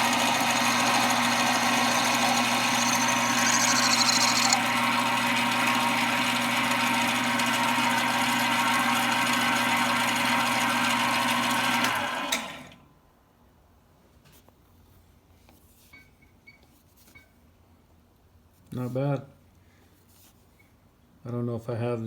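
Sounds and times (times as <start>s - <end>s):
lathe running with a hum: 0.0s - 12.3s.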